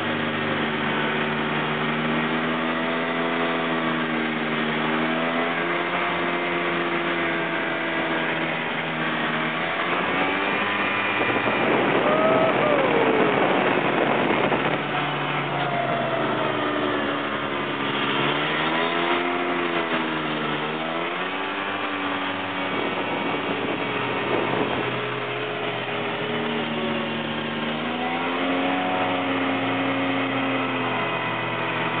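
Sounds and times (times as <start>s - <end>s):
snowmobile engine revving: 0.0s - 32.0s
steady rushing noise: 0.0s - 32.0s.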